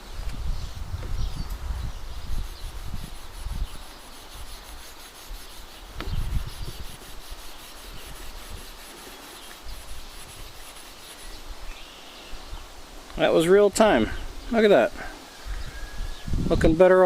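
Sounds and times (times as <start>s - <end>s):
steel wool scrubbing metal: 2.2s - 11.5s.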